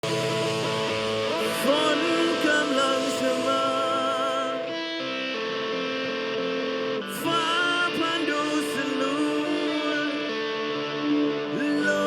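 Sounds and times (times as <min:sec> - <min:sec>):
rock band playing: 0:00.0 - 0:06.9
held guitar chords: 0:00.0 - 0:12.0
lead guitar melody with vibrato: 0:00.0 - 0:12.0.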